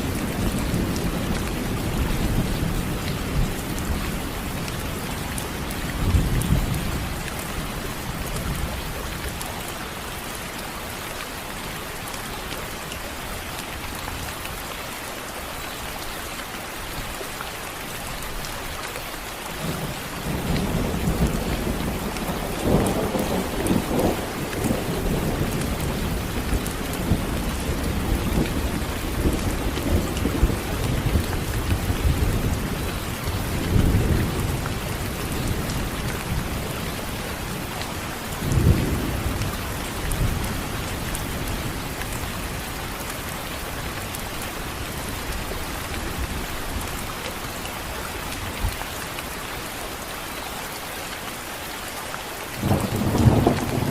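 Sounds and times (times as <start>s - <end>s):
steady rain: 0.0s - 53.9s
rolling thunder: 52.6s - 53.9s.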